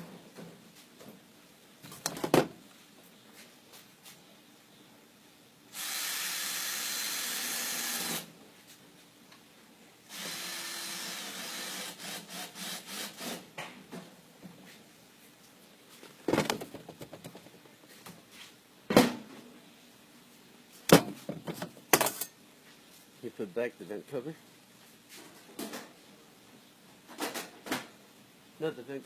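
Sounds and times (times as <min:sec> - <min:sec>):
cordless drill running: 0:05.8 - 0:08.3, 0:10.1 - 0:13.4.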